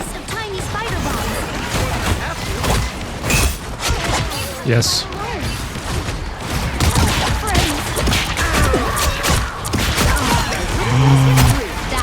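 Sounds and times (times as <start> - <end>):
game character voices: 4.3 - 5.5, 10.0 - 12.0.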